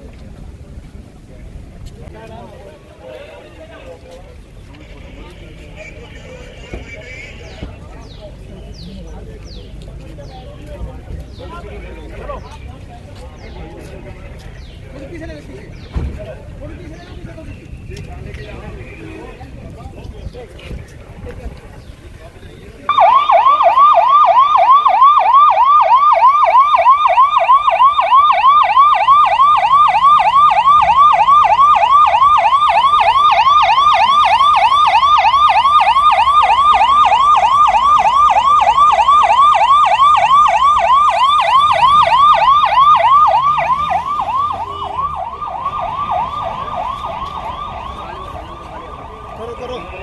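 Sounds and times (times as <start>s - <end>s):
electronic siren yelping: 22.9s - 50.0s.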